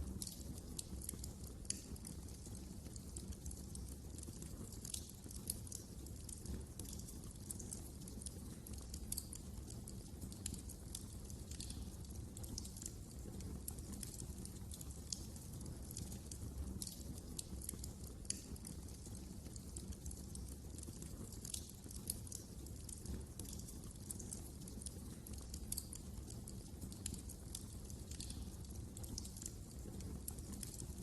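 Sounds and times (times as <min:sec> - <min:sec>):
low rumble of flames: 0:00.0 - 0:31.0
wood fire crackling and popping: 0:00.0 - 0:31.0.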